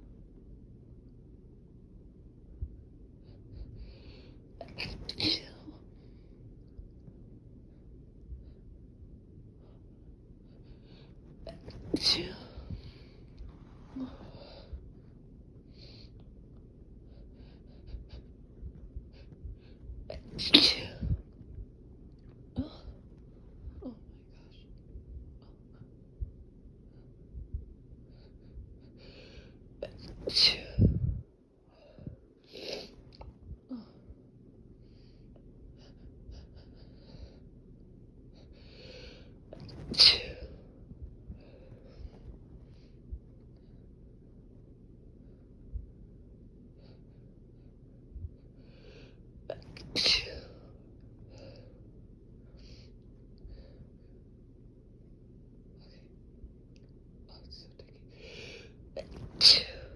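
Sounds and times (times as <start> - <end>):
soft breaths: 2.0 - 59.9
person sneezing: 20.3 - 21.2, 39.8 - 40.5, 59.1 - 59.9.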